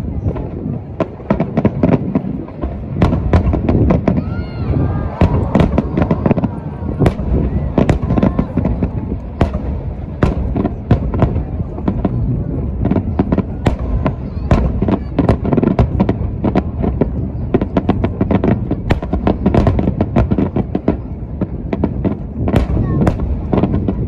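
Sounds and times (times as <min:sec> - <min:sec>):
fireworks bursts and bangs: 0:00.0 - 0:24.0.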